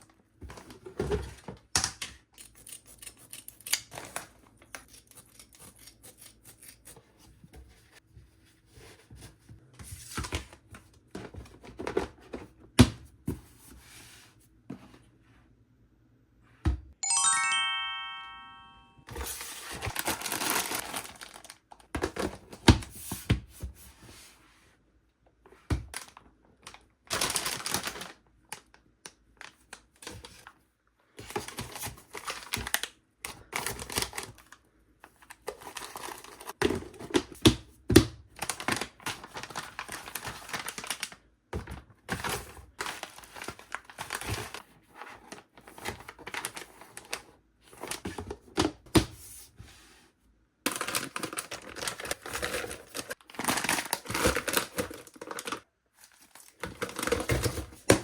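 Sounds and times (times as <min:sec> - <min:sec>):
plastic packaging crinkling: 0:19.8 - 0:21.8, 0:27.1 - 0:28.2, 0:50.7 - 0:58.0.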